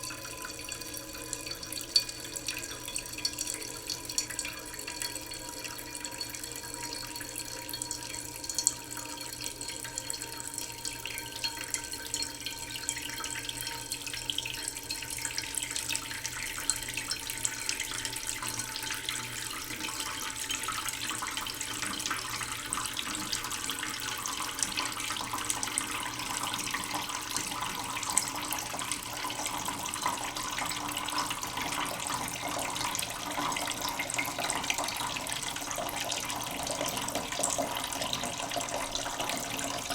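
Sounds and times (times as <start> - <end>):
tap water filling a pot: 0.0 - 39.9.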